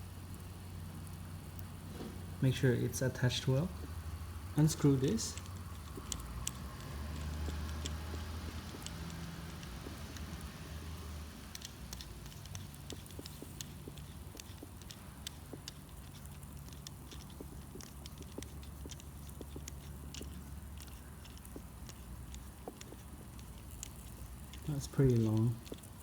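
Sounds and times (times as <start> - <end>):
low steady hum: 0.0 - 26.0
small metal parts clicking: 4.6 - 10.5, 11.4 - 26.0.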